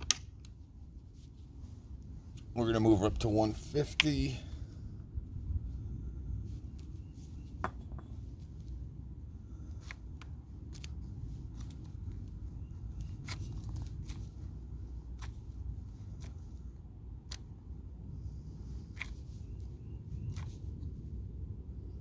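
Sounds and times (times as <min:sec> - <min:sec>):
low steady rumble: 0:00.0 - 0:22.0.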